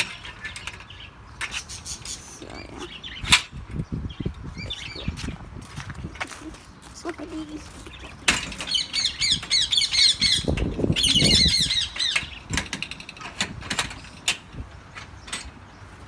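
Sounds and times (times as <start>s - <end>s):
caged birds chirping: 0.0s - 16.0s
sharp clicks and knocks: 12.0s - 15.6s.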